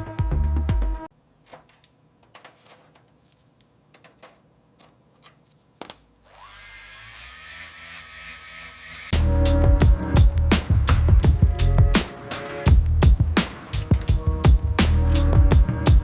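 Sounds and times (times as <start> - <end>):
background music: 0.0 - 1.1, 9.1 - 16.0
small electric motor whining: 6.2 - 9.2.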